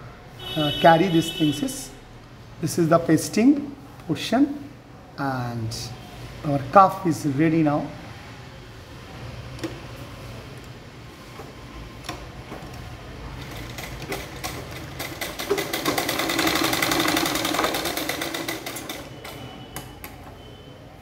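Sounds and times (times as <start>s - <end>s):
sewing machine stitching: 12.6s - 19.4s.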